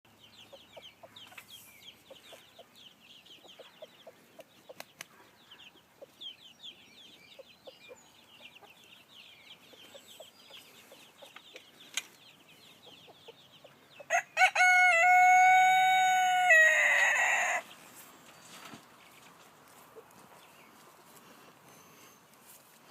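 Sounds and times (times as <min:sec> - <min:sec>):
rooster crowing: 0:14.1 - 0:17.7.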